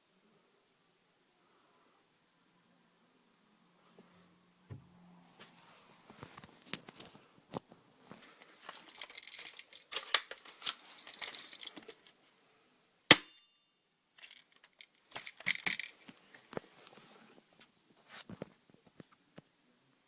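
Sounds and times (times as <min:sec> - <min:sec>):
clicks and rustling of handling: 0:06.1 - 0:12.2, 0:14.2 - 0:19.5
airsoft gun shot: 0:13.1 - 0:13.4.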